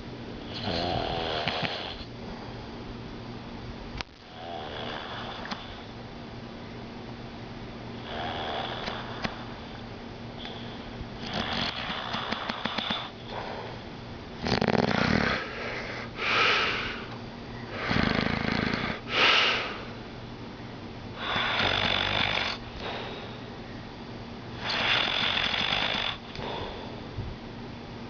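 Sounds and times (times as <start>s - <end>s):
man snoring: 0.5s - 2.1s, 4.3s - 5.8s, 8.0s - 9.5s, 11.2s - 13.5s, 14.4s - 17.1s, 17.7s - 19.9s, 21.2s - 23.1s, 24.6s - 26.7s.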